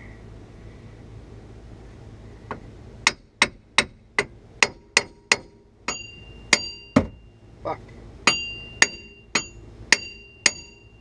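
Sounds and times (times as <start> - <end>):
hammer striking metal hub: 3.1 - 7.2, 8.2 - 11.0.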